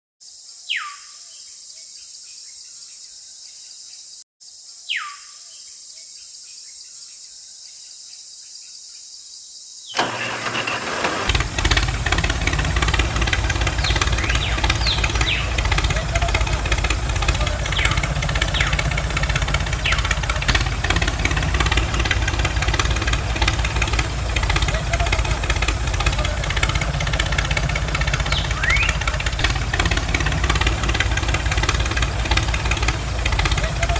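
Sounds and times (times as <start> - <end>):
tractor engine rumbling: 10.0 - 33.9.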